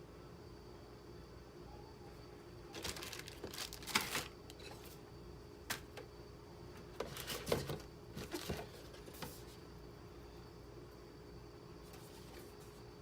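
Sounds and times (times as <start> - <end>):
packaging rustles: 2.7 - 5.0, 7.0 - 9.5.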